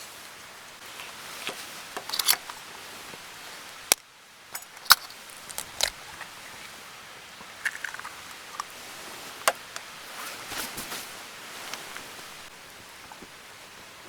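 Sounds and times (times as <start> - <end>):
short rustles: 7.8 - 12.5.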